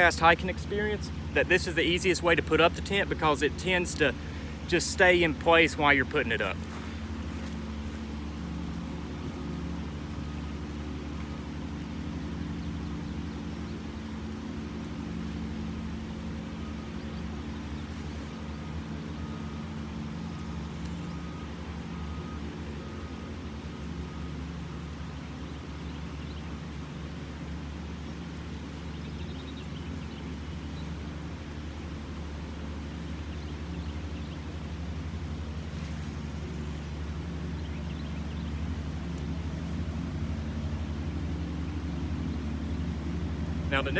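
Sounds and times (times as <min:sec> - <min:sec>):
low mechanical drone: 0:00.0 - 0:43.9
low motor hum: 0:00.0 - 0:43.9.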